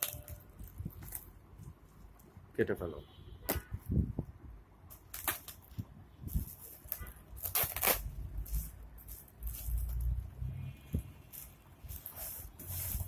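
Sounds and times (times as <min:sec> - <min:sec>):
plastic crinkling: 0:00.0 - 0:02.3, 0:04.9 - 0:10.1
packaging rustling and scraping: 0:04.9 - 0:10.2, 0:11.2 - 0:13.0.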